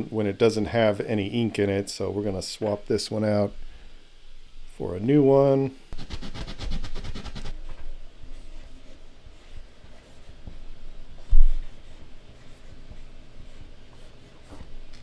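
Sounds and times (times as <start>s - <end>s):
marker tip scratching: 6.0s - 7.6s.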